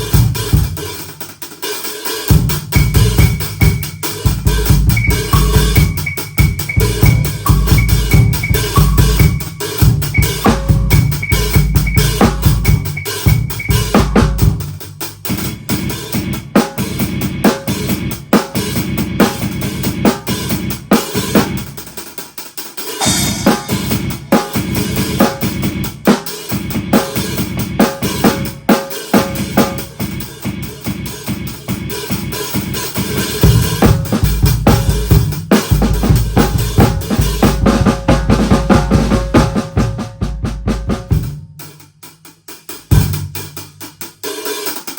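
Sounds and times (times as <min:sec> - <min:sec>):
drum kit playing: 0:00.0 - 0:44.9
cymbal crash: 0:23.0 - 0:25.8.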